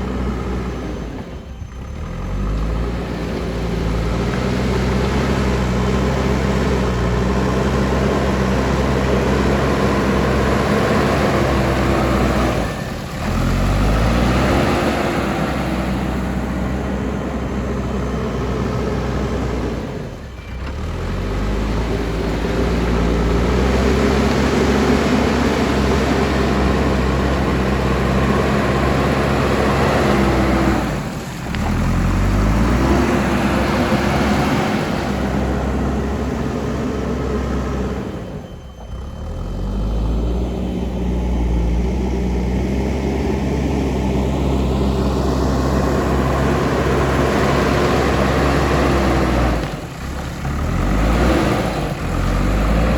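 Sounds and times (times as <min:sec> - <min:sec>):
diesel engine revving under load: 0:00.0 - 0:52.9.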